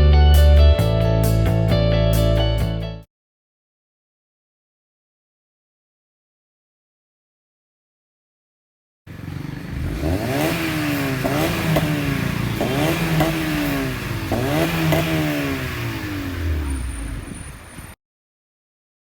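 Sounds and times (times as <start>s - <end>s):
car engine throttle blips: 9.1s - 18.0s.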